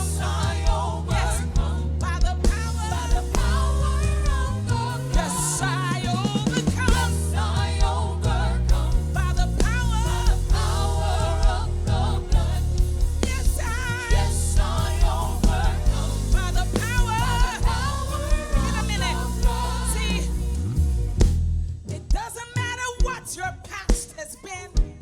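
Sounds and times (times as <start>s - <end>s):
voices singing with vibrato: 0.0s - 20.8s
drum beat: 0.0s - 21.4s
bass line: 0.0s - 21.9s.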